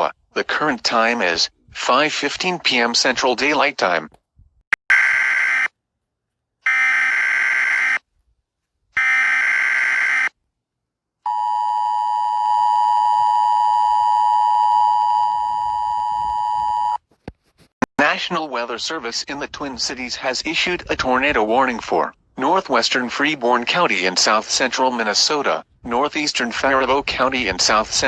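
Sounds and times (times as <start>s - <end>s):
steady high alarm tone: 4.9s - 5.7s, 6.6s - 8.0s, 9.0s - 10.4s, 11.3s - 17.0s.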